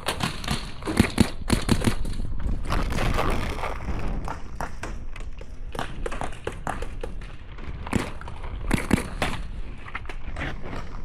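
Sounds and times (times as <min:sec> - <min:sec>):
paintball markers firing: 0:00.0 - 0:02.2, 0:04.2 - 0:09.5.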